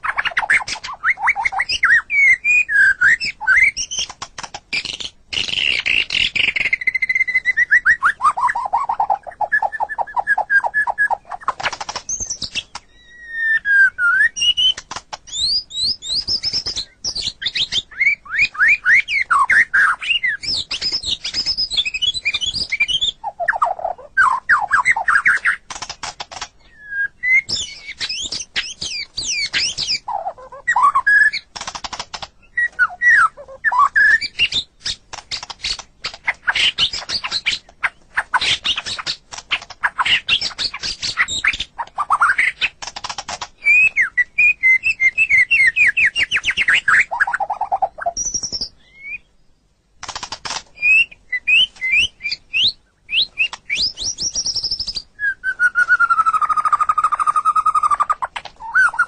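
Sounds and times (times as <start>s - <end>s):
bird singing gliding whistles: 0.0s - 4.1s, 4.7s - 25.6s, 26.6s - 31.5s, 32.4s - 35.8s, 43.6s - 49.4s, 50.8s - 59.0s
bird chattering clicking notes: 19.3s - 26.6s, 27.4s - 44.0s.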